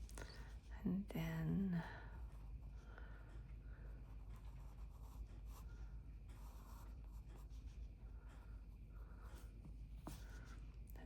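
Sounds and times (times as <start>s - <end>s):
low room hum: 0.0s - 11.0s
pencil scratching on paper: 4.0s - 7.9s.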